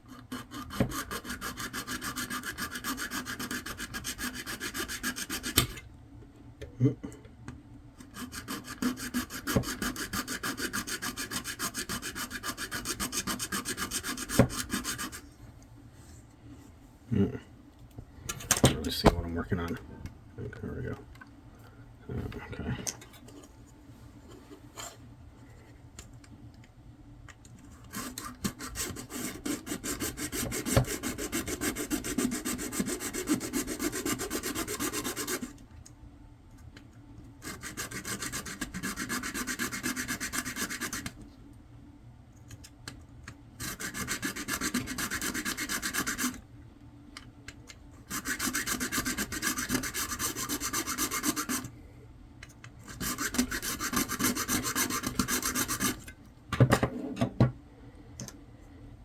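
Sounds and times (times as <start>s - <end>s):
tool rasping through plastic: 0.0s - 5.8s, 8.0s - 15.2s, 27.6s - 35.6s, 37.4s - 41.2s, 43.6s - 46.4s, 48.0s - 51.7s, 52.7s - 56.2s.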